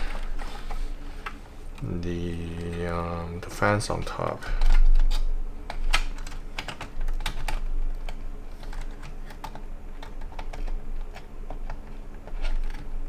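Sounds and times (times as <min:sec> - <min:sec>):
steady low hum: 0:00.0 - 0:13.0
clicks and taps of pc parts: 0:04.3 - 0:12.9.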